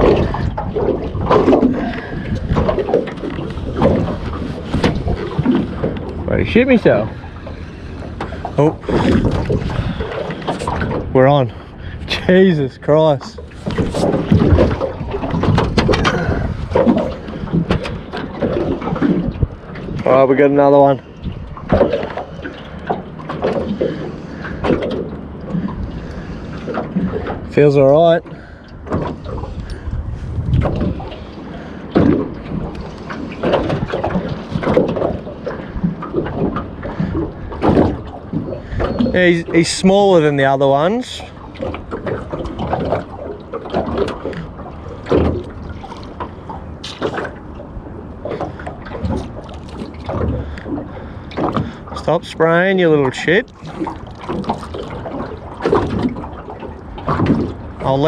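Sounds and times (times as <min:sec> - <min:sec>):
knocks and clicks on a boat: 0:00.0 - 0:58.0
water splashing and trickling: 0:00.0 - 0:58.0
fishing gear knocking and clattering: 0:13.6 - 0:19.3.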